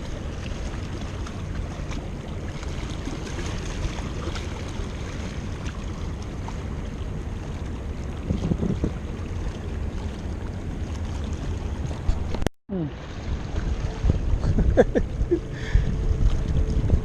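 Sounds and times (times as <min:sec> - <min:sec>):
wind buffeting microphone: 0:07.9 - 0:09.5, 0:13.1 - 0:17.0.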